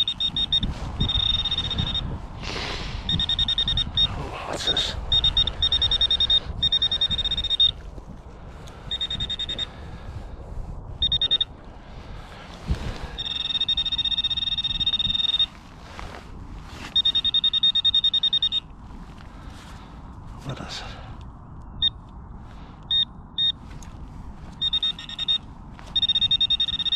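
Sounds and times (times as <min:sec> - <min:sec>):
metal detector tone: 0:00.0 - 0:02.2, 0:03.1 - 0:07.8, 0:08.9 - 0:09.7, 0:11.0 - 0:11.5, 0:13.1 - 0:15.6, 0:16.8 - 0:18.7, 0:22.9 - 0:23.6, 0:24.5 - 0:26.9.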